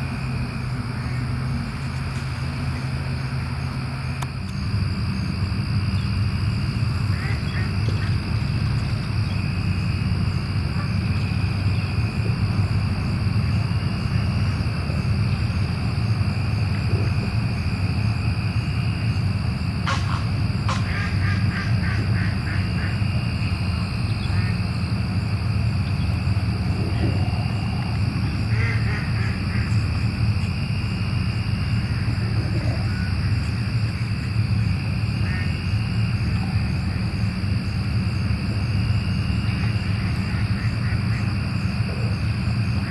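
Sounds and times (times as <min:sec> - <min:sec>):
steady low rumble: 0:00.0 - 0:42.9
birds calling: 0:04.4 - 0:38.1.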